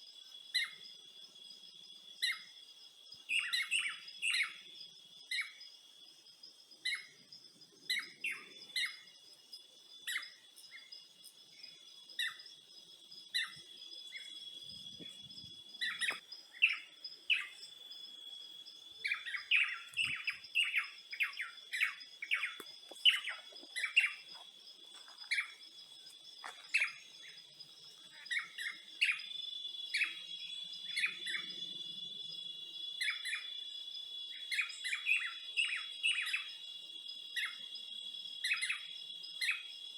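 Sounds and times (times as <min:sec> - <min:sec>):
high-pitched insect trill: 0:00.0 - 0:39.9
birds chirping: 0:06.8 - 0:33.6.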